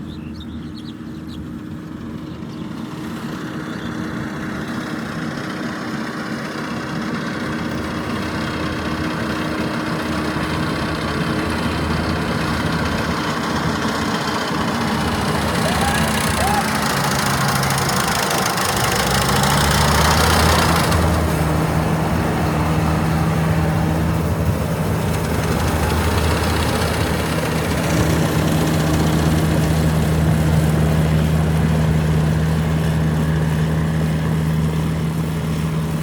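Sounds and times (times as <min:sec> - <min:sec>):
combine harvester engine hum: 0:00.0 - 0:36.0
broad rushing noise: 0:09.1 - 0:36.0.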